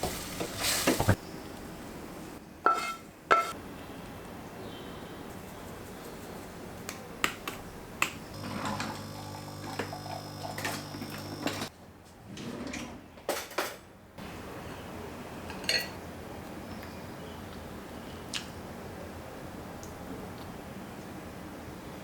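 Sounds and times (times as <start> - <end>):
electric hum: 8.3 - 11.7.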